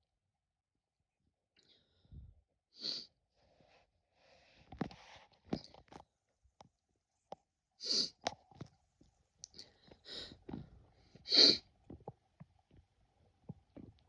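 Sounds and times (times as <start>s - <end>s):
short breaths and sniffs: 11.2s - 11.6s.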